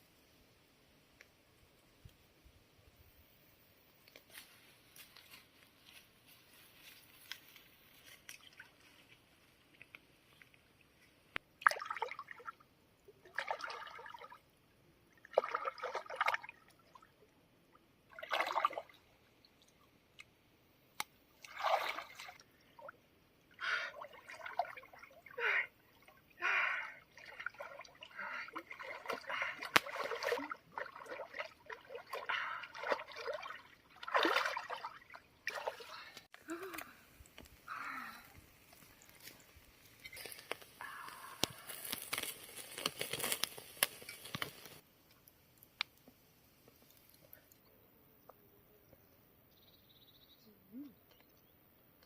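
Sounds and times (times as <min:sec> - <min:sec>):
water sloshing and splashing: 0:11.6 - 0:12.6, 0:13.2 - 0:17.2, 0:18.1 - 0:19.8, 0:21.4 - 0:23.0, 0:23.8 - 0:26.3, 0:27.1 - 0:36.8.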